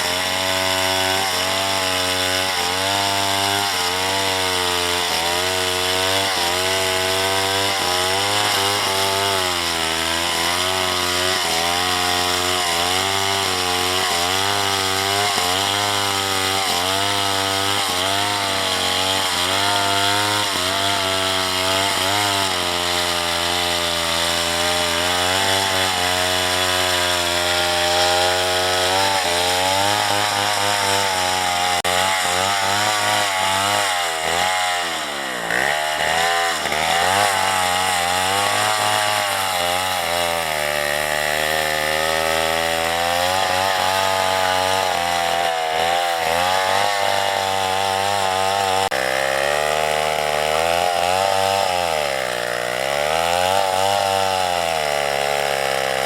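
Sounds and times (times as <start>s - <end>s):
chainsaw cutting through wood: 0.0s - 56.0s.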